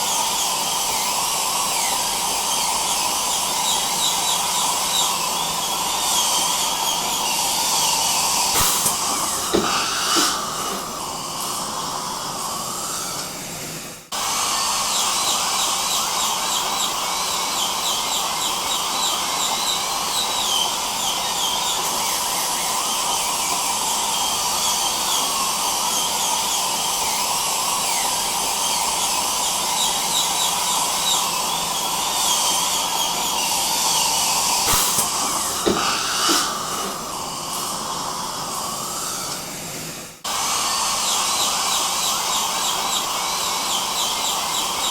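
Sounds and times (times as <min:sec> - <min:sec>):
dental drill whine: 0:00.0 - 0:44.9
dental suction hiss: 0:01.6 - 0:13.5, 0:29.4 - 0:39.6.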